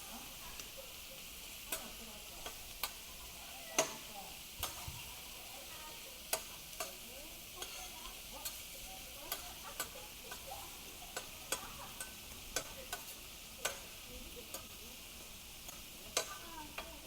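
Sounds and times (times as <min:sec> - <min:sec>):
meat sizzling on a griddle: 0:00.0 - 0:17.0.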